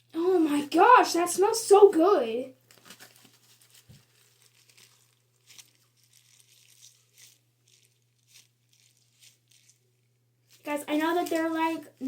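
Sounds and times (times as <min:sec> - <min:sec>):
low steady hum: 0:00.0 - 0:12.0
plastic bag crinkling: 0:02.6 - 0:12.0.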